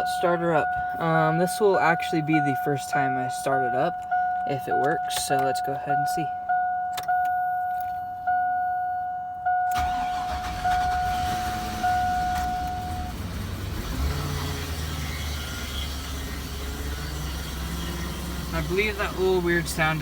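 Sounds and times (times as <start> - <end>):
dashboard warning chime: 0.0 - 20.0
truck engine cranking and running: 9.7 - 20.0.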